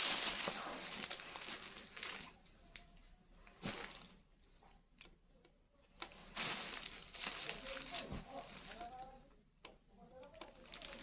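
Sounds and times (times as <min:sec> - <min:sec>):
gift packaging rustling: 0:00.0 - 0:02.4, 0:06.1 - 0:09.2, 0:10.5 - 0:11.0.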